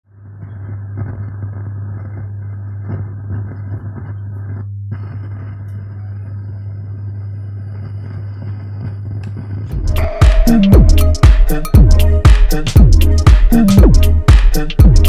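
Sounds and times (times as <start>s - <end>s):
crackly noise: 0.1s - 9.7s
subwoofer low hum: 0.1s - 15.0s.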